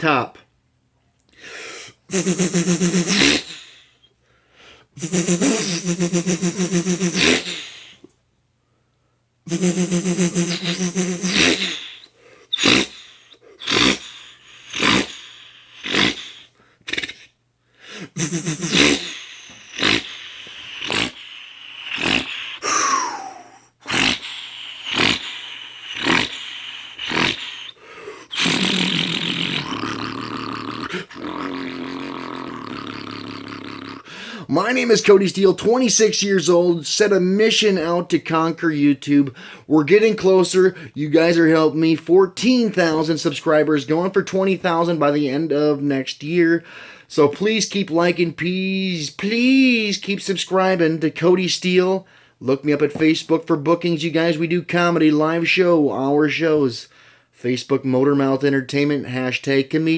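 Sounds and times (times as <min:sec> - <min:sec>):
person imitating diesel engine: 0:02.0 - 0:04.0, 0:05.0 - 0:08.1, 0:09.5 - 0:45.6.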